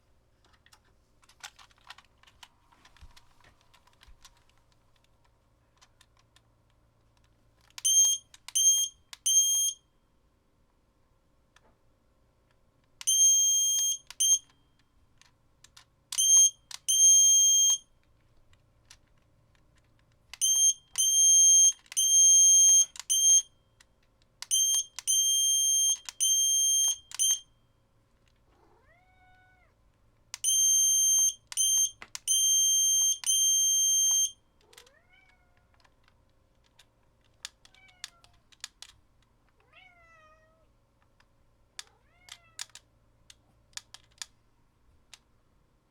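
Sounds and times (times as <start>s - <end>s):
morse code beeps: 7.9s - 9.8s, 16.2s - 17.8s, 24.5s - 27.4s, 30.5s - 34.4s
cat meowing: 28.6s - 29.8s, 34.6s - 35.8s, 37.7s - 38.4s, 39.6s - 40.7s, 41.8s - 42.7s
faint clicks: 41.0s - 44.4s.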